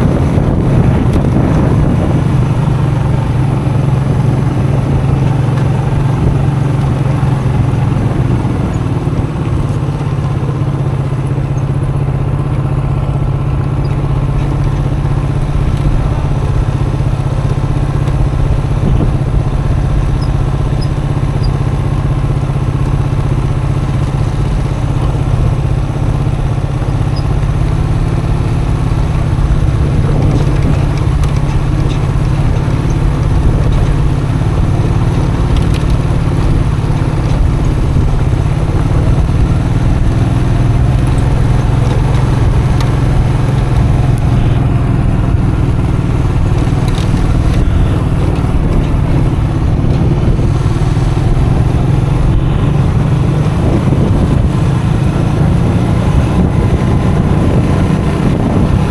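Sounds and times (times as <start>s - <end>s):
motorcycle engine running: 0.0s - 58.9s.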